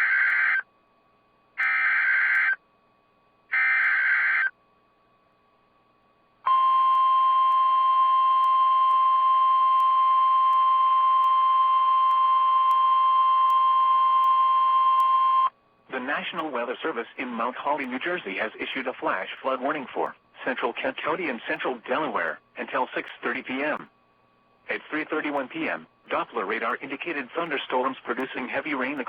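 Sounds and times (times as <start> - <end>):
screeching digital data tones: 0.0 - 0.6, 1.6 - 2.6, 3.6 - 4.5
long steady alert tone: 6.4 - 15.5.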